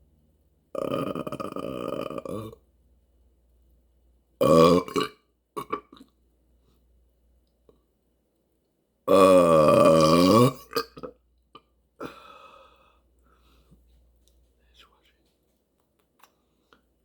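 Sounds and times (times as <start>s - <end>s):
person burping: 0.8s - 2.6s, 4.4s - 6.1s, 9.1s - 12.2s.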